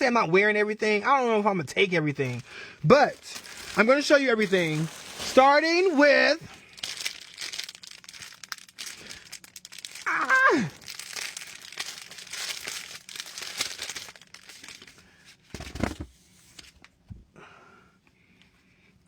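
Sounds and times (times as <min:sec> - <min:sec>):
plastic packaging crinkling and tearing: 0:01.8 - 0:15.0.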